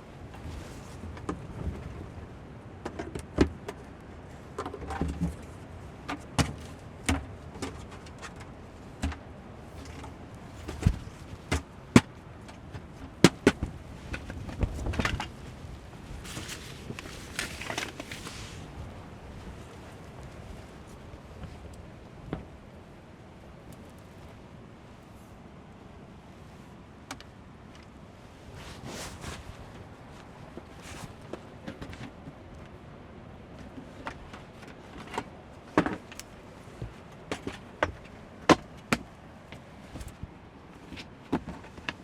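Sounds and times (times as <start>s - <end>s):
camping gear clicking and clinking: 2.9s - 20.7s
fabric rustling: 13.7s - 21.6s, 28.2s - 31.2s.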